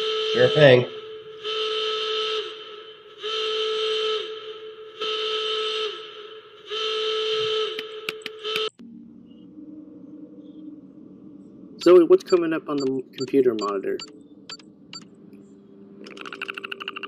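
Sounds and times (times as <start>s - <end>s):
horn-like alarm blasts: 0.0s - 9.5s, 11.8s - 15.1s
sharp clicks: 7.7s - 8.8s, 12.2s - 15.1s, 16.0s - 17.0s.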